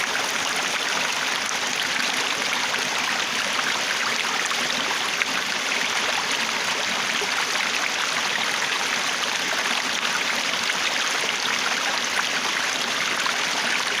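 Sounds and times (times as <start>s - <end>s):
stream water babbling: 0.0s - 14.0s.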